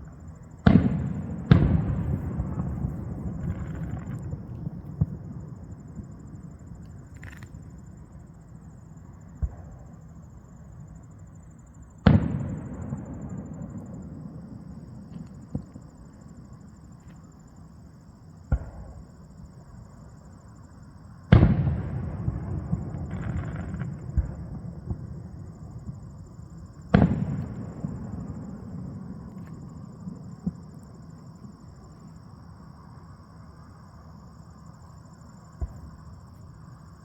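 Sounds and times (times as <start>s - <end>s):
fireworks booming with rolling echo: 0.0s - 8.0s, 9.3s - 10.3s, 11.9s - 16.4s, 18.5s - 19.6s, 21.2s - 31.9s, 35.5s - 36.6s.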